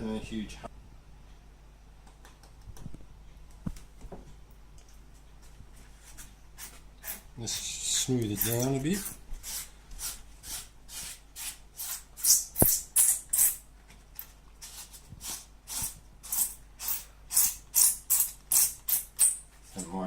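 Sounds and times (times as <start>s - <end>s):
rubbing strokes on foam: 5.9s - 12.5s.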